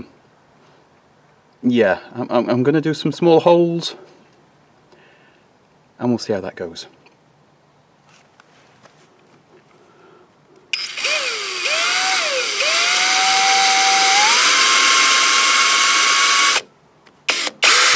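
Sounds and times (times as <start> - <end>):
electric drill boring into wood: 10.8 - 16.7, 17.3 - 17.9.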